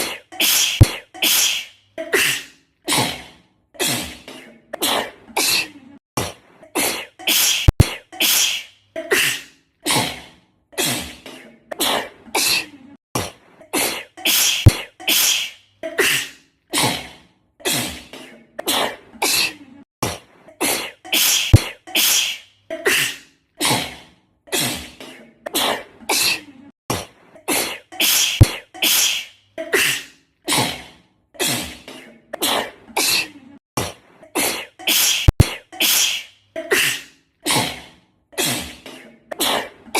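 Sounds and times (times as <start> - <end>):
girl sneezing rapidly: 0.0 - 3.1, 6.8 - 10.1, 13.8 - 17.0, 20.6 - 23.8, 27.5 - 30.7, 34.4 - 37.7.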